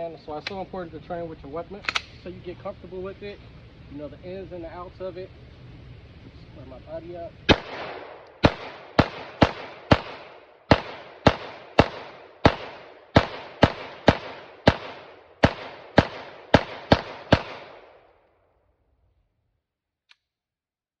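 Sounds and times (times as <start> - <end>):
pistol shots with echo: 7.5 - 18.0.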